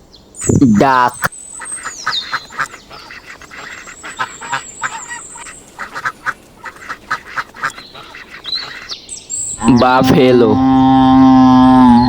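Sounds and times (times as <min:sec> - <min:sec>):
duck quacking: 0:00.4 - 0:09.0.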